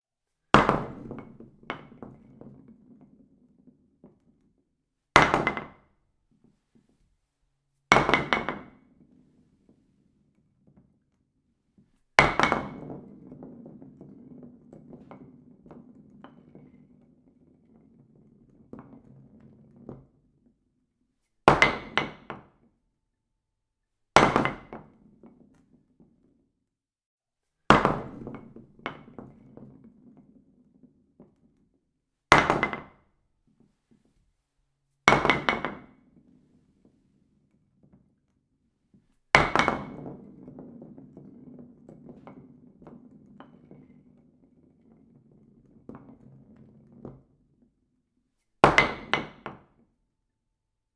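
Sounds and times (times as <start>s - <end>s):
bowling ball crashing into pins: 27.7s - 29.4s.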